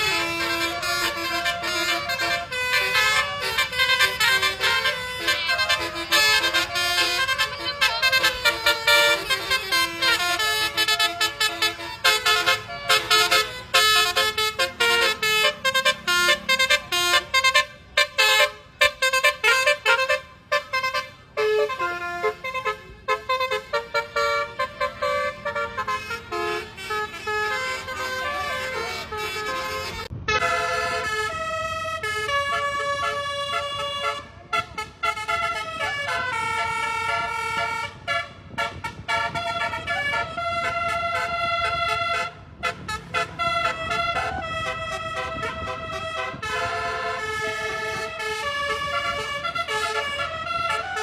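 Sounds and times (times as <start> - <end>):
multi-tone musical bus horn: 0.0 - 51.0.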